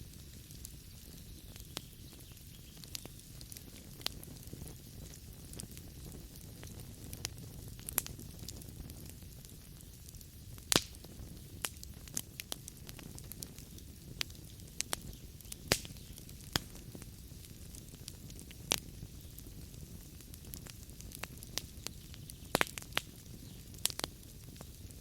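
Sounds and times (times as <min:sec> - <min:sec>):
fire rumbling: 0:00.0 - 0:25.0
logs popping: 0:10.6 - 0:11.8, 0:14.8 - 0:17.1, 0:20.6 - 0:24.8.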